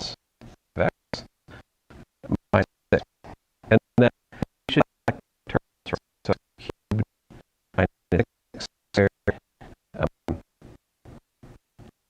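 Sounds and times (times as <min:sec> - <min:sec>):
lecturer's voice breaking up: 0:00.0 - 0:01.6, 0:02.2 - 0:07.1, 0:07.7 - 0:10.4.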